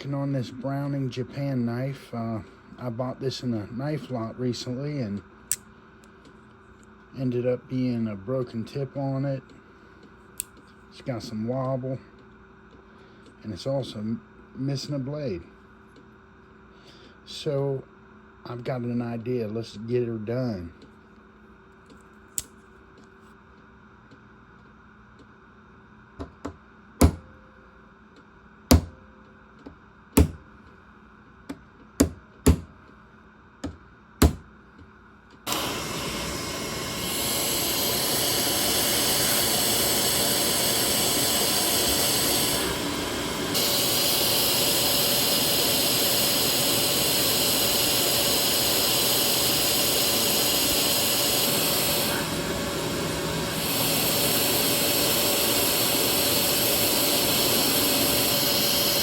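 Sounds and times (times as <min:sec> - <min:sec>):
sharp knocks: 0:28.7 - 0:28.9, 0:33.6 - 0:34.5.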